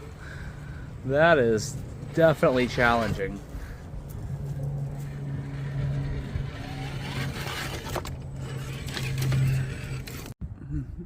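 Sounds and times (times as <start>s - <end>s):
tyres clicking and scraping: 1.6s - 10.4s
electric motor whine: 4.4s - 10.3s.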